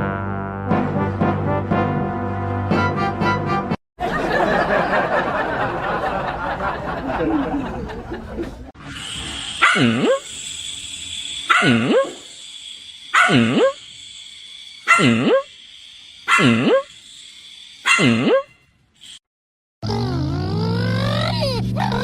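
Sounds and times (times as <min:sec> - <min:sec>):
dog barking: 0:09.6 - 0:10.2, 0:11.5 - 0:12.2, 0:13.1 - 0:13.8, 0:14.9 - 0:15.4, 0:16.3 - 0:16.8, 0:17.8 - 0:18.5.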